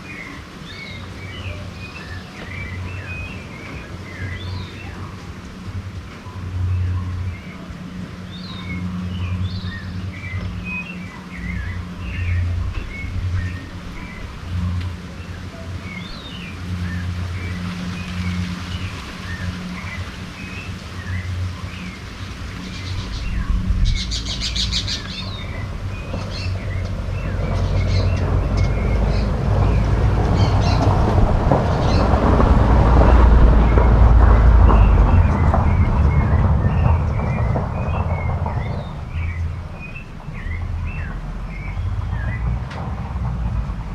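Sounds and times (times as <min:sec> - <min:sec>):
low steady rumble: 0:00.0 - 0:43.9
low hum: 0:02.5 - 0:43.9
birds chirping and calling: 0:06.2 - 0:32.4.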